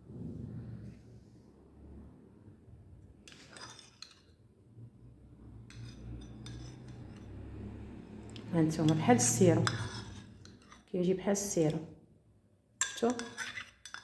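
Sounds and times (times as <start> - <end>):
spoon clinking in a container: 8.7 - 11.8, 12.8 - 14.0.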